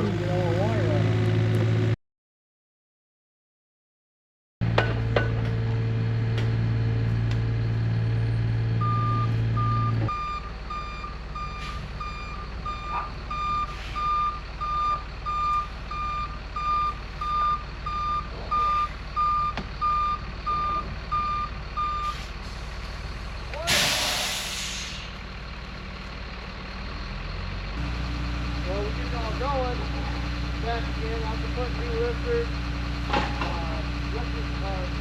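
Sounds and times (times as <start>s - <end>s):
low engine hum: 4.6s - 23.7s, 24.5s - 35.0s
backup alarm beeping: 8.8s - 22.1s.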